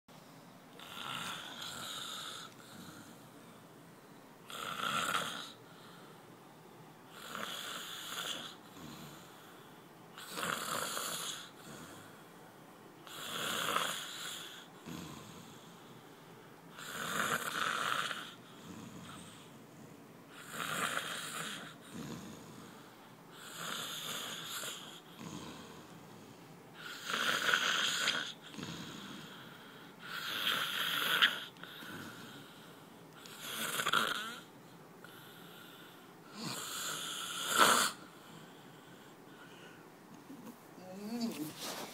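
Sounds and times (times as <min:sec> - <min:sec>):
man snoring loudly: 0:00.8 - 0:03.2, 0:04.5 - 0:05.6, 0:07.1 - 0:09.4, 0:10.2 - 0:12.1, 0:13.0 - 0:15.6, 0:16.7 - 0:19.3, 0:20.4 - 0:22.8, 0:23.4 - 0:25.8, 0:26.8 - 0:32.6, 0:33.2 - 0:38.2.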